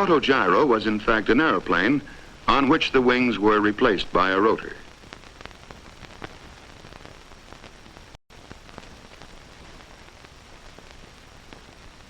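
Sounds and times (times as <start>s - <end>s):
film soundtrack hiss: 0.0s - 12.0s
crackling clicks: 1.3s - 12.0s.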